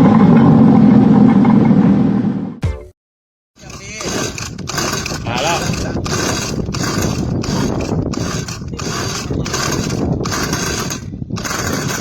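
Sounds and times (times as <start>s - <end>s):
small two-stroke engine cranking: 3.6s - 12.0s.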